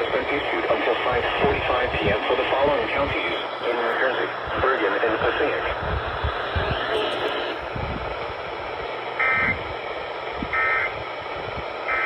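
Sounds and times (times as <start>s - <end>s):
radio static: 0.0s - 7.9s
digital data tone bursts: 6.7s - 7.6s.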